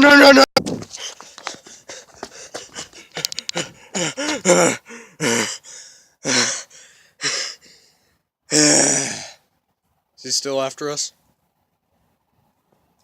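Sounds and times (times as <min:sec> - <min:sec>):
person gasping and panting: 0:00.8 - 0:09.5.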